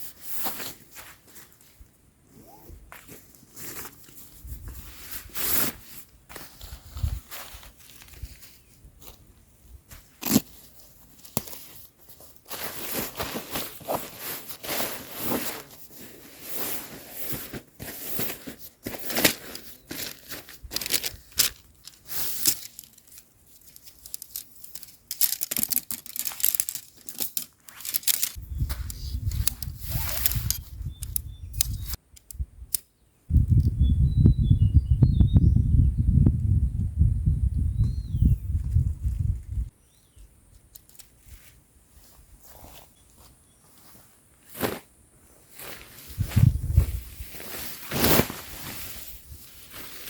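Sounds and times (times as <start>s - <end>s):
plastic rustling and crinkling: 10.0s - 30.7s, 45.5s - 50.0s.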